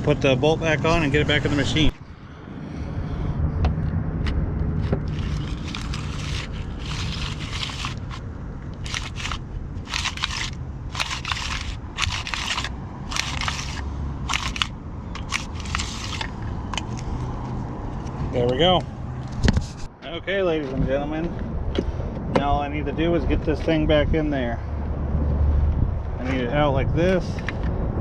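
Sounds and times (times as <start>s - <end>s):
ratchet wrench clicking: 8.8s - 17.0s.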